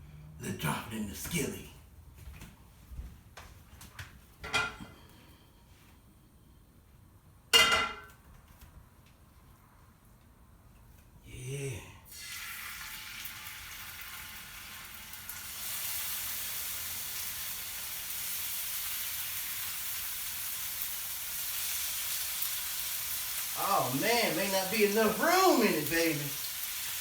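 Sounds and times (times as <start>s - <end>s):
fish sizzling in a skillet: 12.1s - 27.0s.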